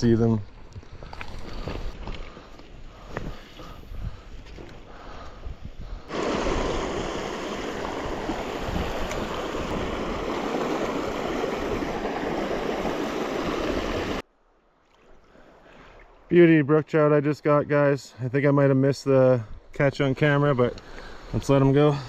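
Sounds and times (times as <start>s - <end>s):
creek water rushing: 6.1s - 14.2s.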